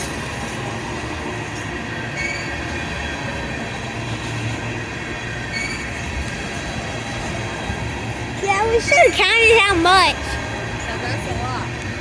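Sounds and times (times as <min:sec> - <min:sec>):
freight train rumbling past: 0:00.0 - 0:12.0
faint wheel squeals: 0:01.6 - 0:03.2, 0:05.3 - 0:06.4, 0:08.6 - 0:09.3.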